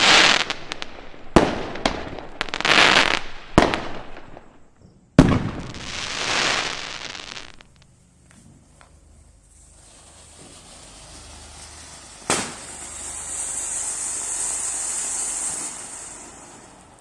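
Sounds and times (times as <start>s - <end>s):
firecracker bang: 0.0s - 7.7s, 9.7s - 17.0s
hiss of burning fireworks: 0.0s - 17.0s.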